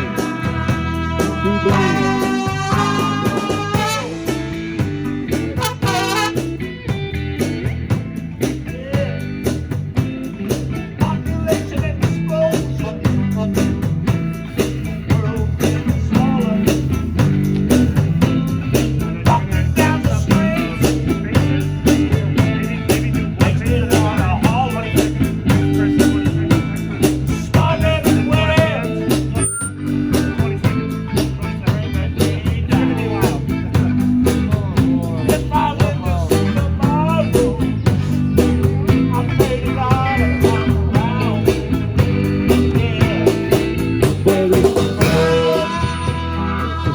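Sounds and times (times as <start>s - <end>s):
person singing: 0.0s - 4.4s, 30.1s - 46.9s
bass guitar: 0.0s - 46.9s
drum kit beat: 0.0s - 46.9s
electric guitar: 0.0s - 46.9s.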